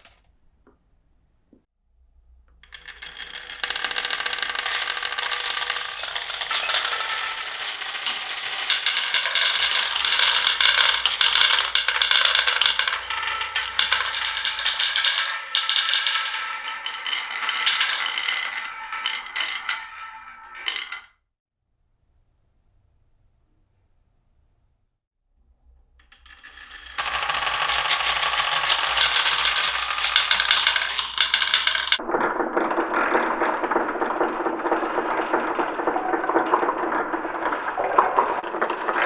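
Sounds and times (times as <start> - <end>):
marbles clattering down wooden run: 2.6 - 21.1, 26.2 - 39.0.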